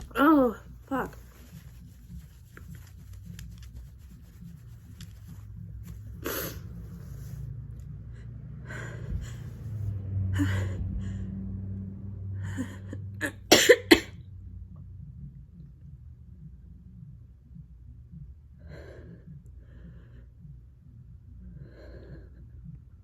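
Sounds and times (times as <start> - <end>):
person sneezing: 13.2 - 14.1.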